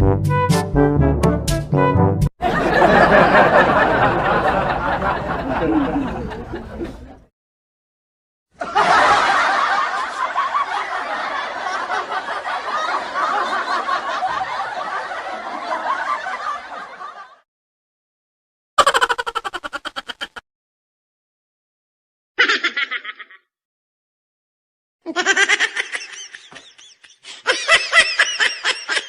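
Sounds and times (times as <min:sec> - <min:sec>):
people laughing: 0:02.4 - 0:07.3, 0:08.6 - 0:17.4, 0:18.8 - 0:20.4, 0:22.4 - 0:23.4, 0:25.1 - 0:29.0.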